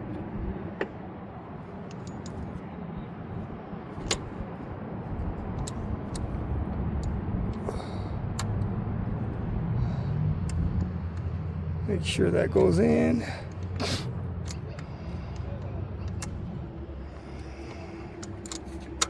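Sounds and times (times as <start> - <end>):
low steady rumble: 0.0 - 19.0
clicks and taps of tools: 17.7 - 19.0.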